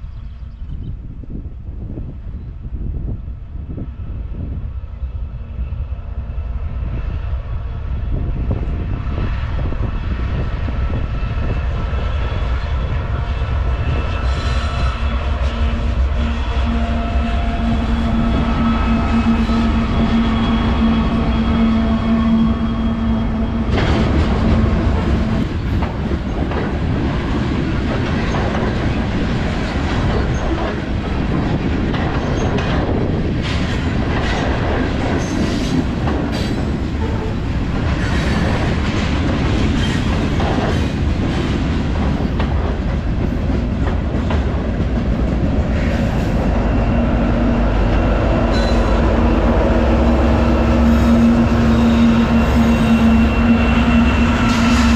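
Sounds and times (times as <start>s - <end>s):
train wheels clattering: 14.2s - 54.9s
diesel engine drone: 46.4s - 54.9s
wheel squeal: 50.8s - 54.9s.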